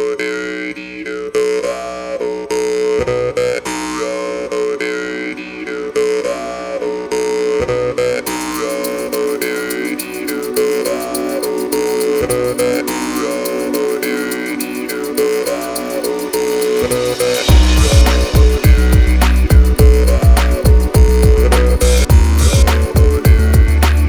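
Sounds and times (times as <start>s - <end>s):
fast high ticking: 8.3s - 24.0s
jew's harp twanging drone: 15.5s - 23.9s.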